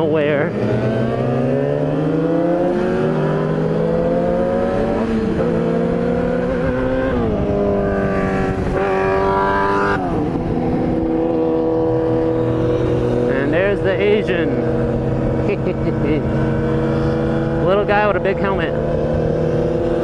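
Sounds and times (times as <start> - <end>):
motorcycle engine accelerating: 0.0 - 20.0
wind rush: 0.5 - 15.4.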